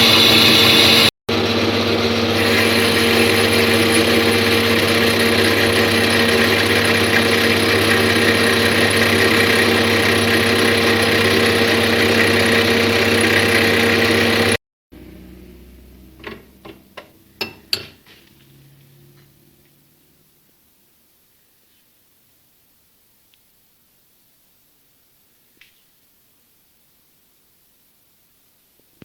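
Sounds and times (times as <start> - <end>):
milling machine humming: 0.0 - 17.8.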